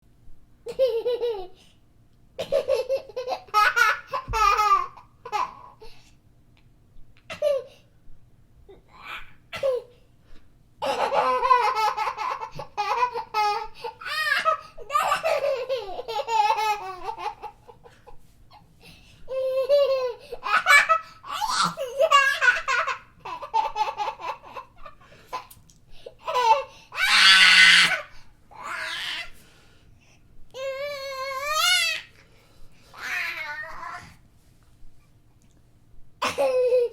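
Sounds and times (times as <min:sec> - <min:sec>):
baby laughing: 0:00.7 - 0:01.6, 0:02.4 - 0:05.8, 0:10.8 - 0:18.6, 0:19.3 - 0:25.6, 0:26.2 - 0:29.3, 0:36.2 - 0:36.9
baby giggling: 0:02.4 - 0:05.8, 0:10.8 - 0:18.6.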